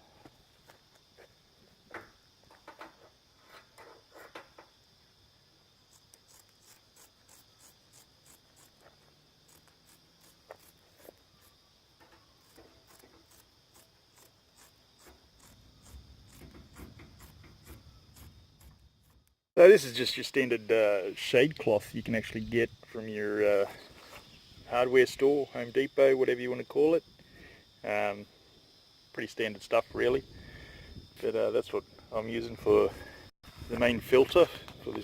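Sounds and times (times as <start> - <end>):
insects chirping: 0.0 - 35.0.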